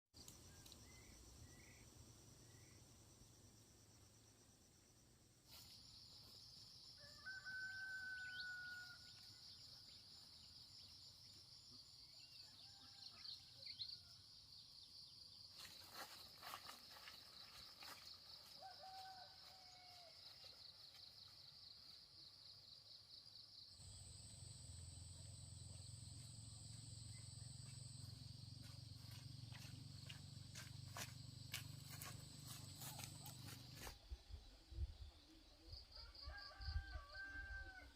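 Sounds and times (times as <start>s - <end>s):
rooster crowing: 7.0s - 9.1s, 18.6s - 20.2s, 36.0s - 37.9s
insects chirring: 14.8s - 35.6s.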